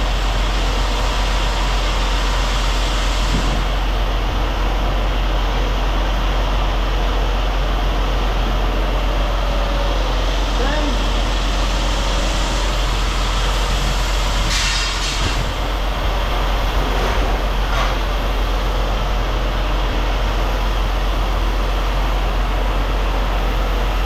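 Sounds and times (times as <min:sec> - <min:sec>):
heavy diesel machinery running: 0:00.0 - 0:24.0
short high hiss: 0:14.5 - 0:15.4.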